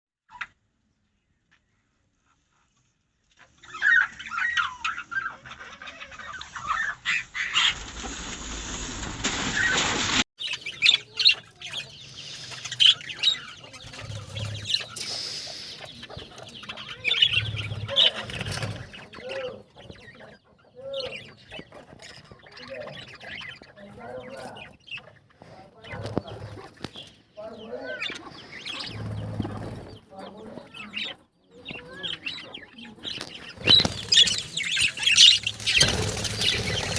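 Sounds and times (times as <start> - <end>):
budgerigars chirping and chattering: 2.2 - 7.8, 10.4 - 36.9
hissing: 14.0 - 16.0.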